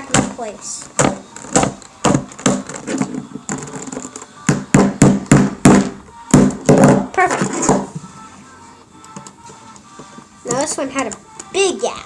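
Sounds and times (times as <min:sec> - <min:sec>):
hammer tapping plastic: 0:00.0 - 0:07.9.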